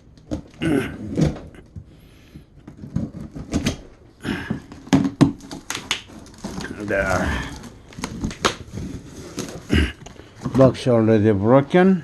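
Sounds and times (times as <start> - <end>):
cardboard flaps scraping and rustling: 2.6 - 10.9.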